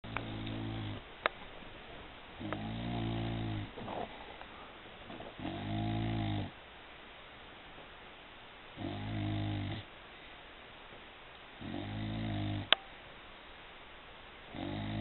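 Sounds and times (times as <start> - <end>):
dog snoring: 0.1 - 1.0, 2.4 - 4.2, 5.4 - 6.6, 8.8 - 9.9, 11.6 - 12.8, 14.5 - 15.0.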